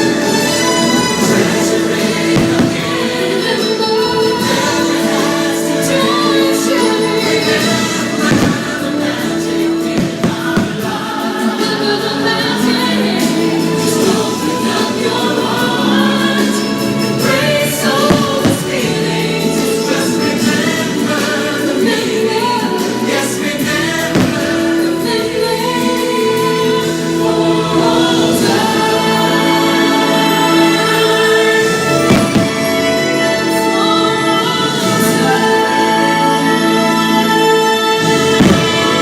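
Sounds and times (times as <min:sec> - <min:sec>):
choir singing: 0:00.0 - 0:39.0
orchestral music: 0:00.0 - 0:39.0
firework bangs: 0:01.0 - 0:03.7, 0:07.3 - 0:11.8, 0:17.1 - 0:20.6, 0:23.6 - 0:25.0, 0:31.1 - 0:33.2, 0:38.1 - 0:39.0.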